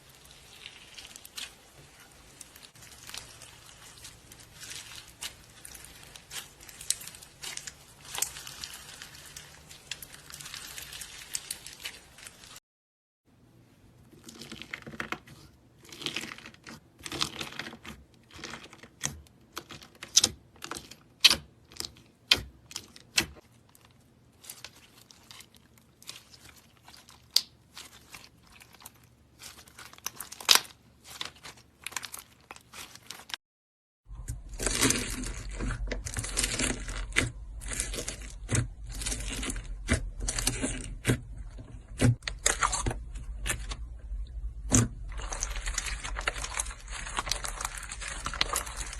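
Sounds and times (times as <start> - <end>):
slime crackling and squishing: 0.0 - 12.6, 14.1 - 33.4, 34.1 - 48.9
low hum: 41.2 - 48.9.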